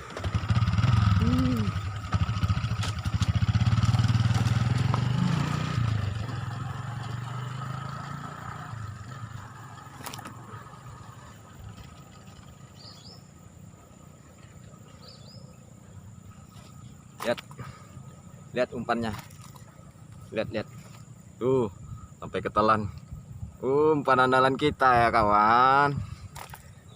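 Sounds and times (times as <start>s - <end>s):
small engine running: 0.0s - 13.4s.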